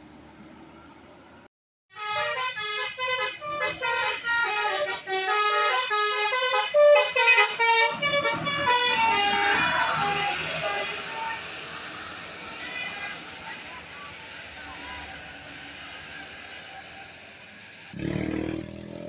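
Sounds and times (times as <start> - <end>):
multi-tone bus horn melody: 1.9 - 16.8.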